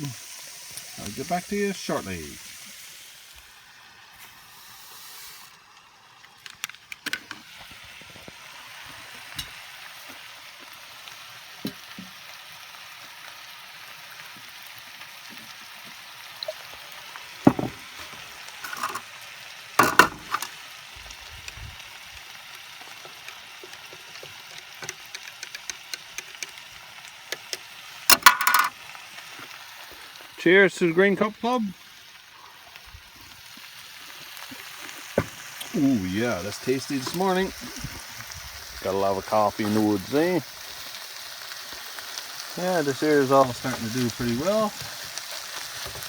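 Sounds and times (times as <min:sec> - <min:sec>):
meat sizzling in a frying pan: 0:00.0 - 0:46.0
sharp clicks and knocks: 0:19.8 - 0:20.5, 0:23.0 - 0:26.6.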